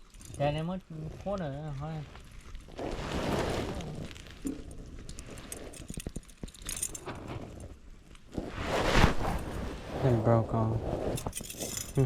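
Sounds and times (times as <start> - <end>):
rustling handling noise: 0.0 - 10.5
small sharp clicks and clinks: 5.4 - 7.2.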